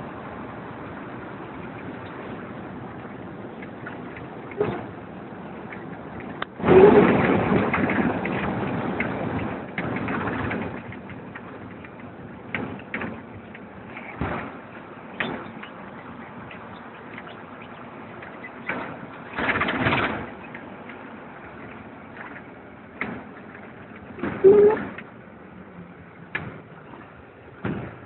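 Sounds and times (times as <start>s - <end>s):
loud rush of noise: 0.0s - 10.8s
car road and engine noise: 0.0s - 28.0s.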